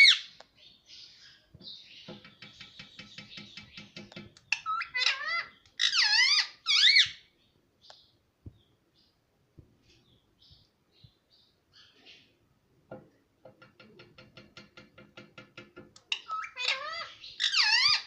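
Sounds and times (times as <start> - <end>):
parrot chattering: 4.5 - 7.2, 16.1 - 18.0
parrot squawks: 4.6 - 7.2, 16.1 - 18.0.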